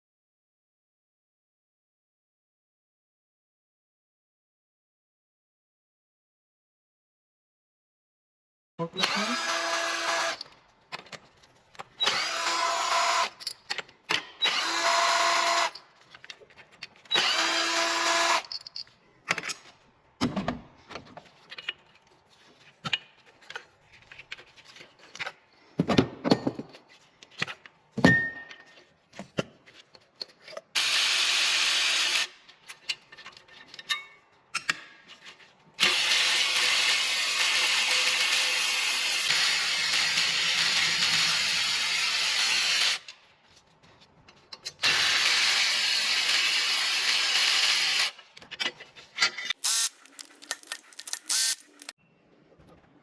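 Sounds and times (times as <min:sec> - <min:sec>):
power drill running: 0:09.0 - 0:10.4, 0:12.0 - 0:13.4, 0:14.4 - 0:15.8, 0:17.1 - 0:18.4, 0:49.6 - 0:51.9
metallic clinks of tools: 0:49.7 - 0:51.9.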